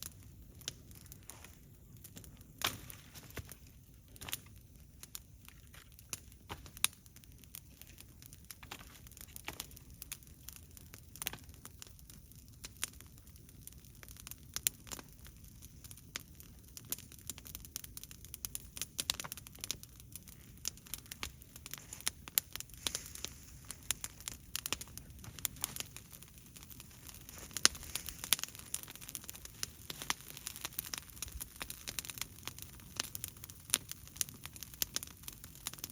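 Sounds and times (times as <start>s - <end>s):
bonfire crackling and popping: 0.0s - 35.9s.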